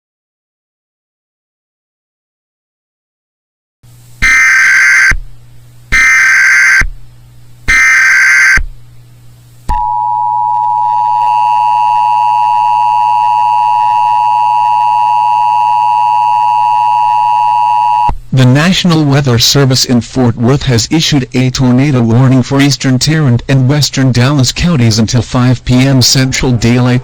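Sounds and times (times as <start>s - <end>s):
buzzy screeching data tones: 4.2s - 5.2s, 6.0s - 6.9s, 7.7s - 8.6s
two-tone attention signal: 4.2s - 5.2s.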